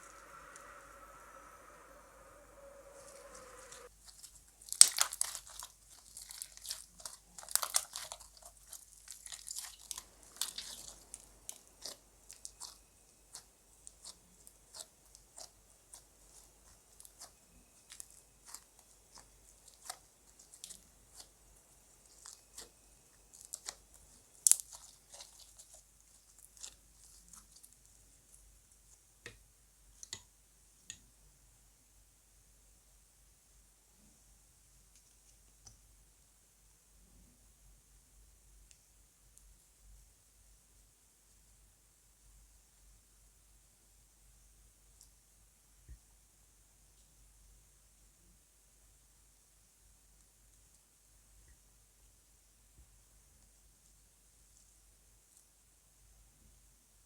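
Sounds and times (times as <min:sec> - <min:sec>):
slime crackling and popping: 0:00.0 - 0:28.0.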